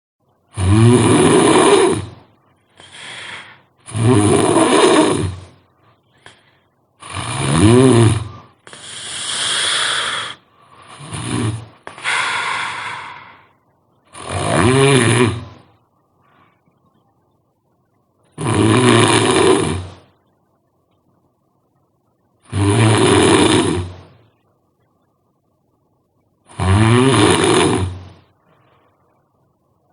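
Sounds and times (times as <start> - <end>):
person snoring loudly: 0.5 - 5.6, 7.0 - 13.5, 14.1 - 15.6, 18.4 - 20.0, 22.4 - 24.1, 26.5 - 28.2
breathy breaths: 2.6 - 4.0, 4.6 - 7.4, 8.0 - 13.6.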